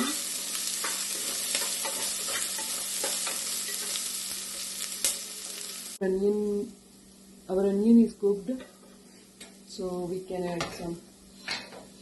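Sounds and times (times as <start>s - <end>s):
onion sizzling in hot oil: 0.0s - 8.4s
spoon stirring against pot: 0.8s - 5.2s.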